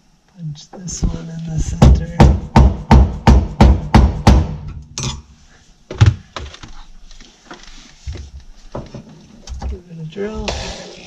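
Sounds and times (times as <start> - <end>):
hammer striking punch on metal: 2.2 - 5.2.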